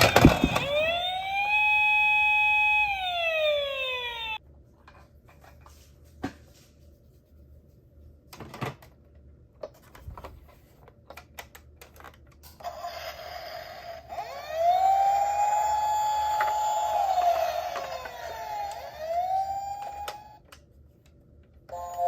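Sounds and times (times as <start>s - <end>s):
toy siren wailing: 0.0s - 4.4s, 12.6s - 20.4s.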